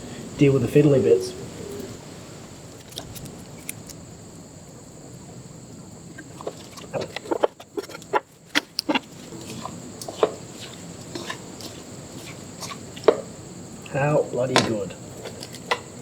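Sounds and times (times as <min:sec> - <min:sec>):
crab shell cracking: 0:02.7 - 0:04.1, 0:06.1 - 0:13.2, 0:15.1 - 0:16.0.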